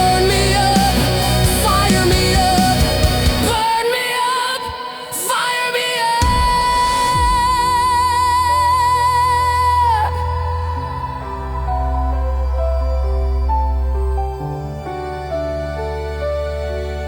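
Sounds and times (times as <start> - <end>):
rock song: 0.0 - 11.1.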